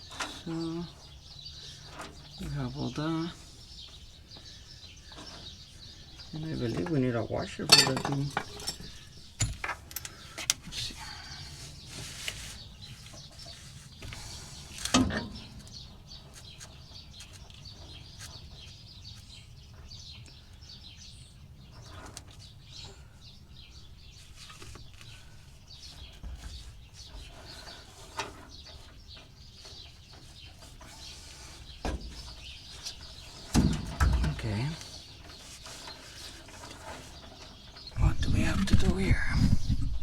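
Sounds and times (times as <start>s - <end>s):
birds chirping: 0.0s - 40.0s
hand tools knocking: 7.7s - 9.7s.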